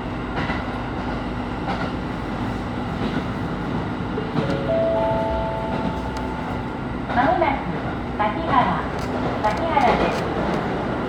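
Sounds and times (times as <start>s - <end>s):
railcar hum and rumble: 0.0s - 11.0s
rising four-note chime: 4.5s - 6.7s.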